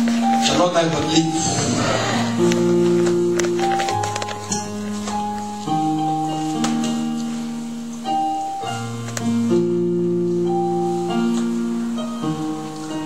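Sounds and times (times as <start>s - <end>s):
electronic keyboard chords: 0.0s - 13.0s.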